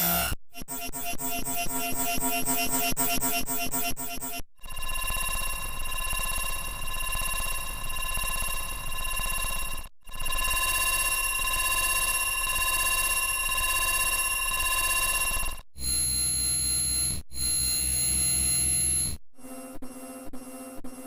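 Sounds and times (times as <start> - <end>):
lower electronic tone: 0.0 - 4.4
electronic ringing tone: 0.0 - 13.0, 14.4 - 19.2.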